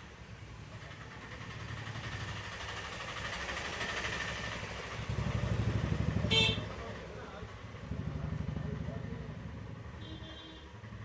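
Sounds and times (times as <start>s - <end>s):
street traffic hiss: 0.0s - 6.1s.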